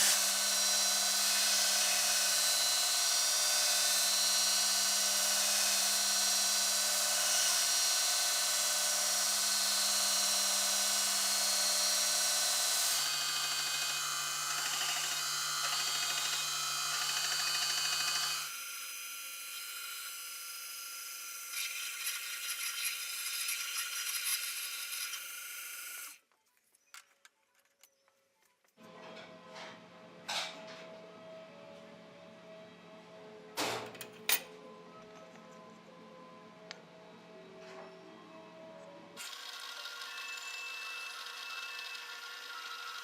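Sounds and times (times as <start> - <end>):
electric power tool humming: 0.0 - 26.2, 39.2 - 43.0
tool scraping and rubbing: 21.5 - 25.3.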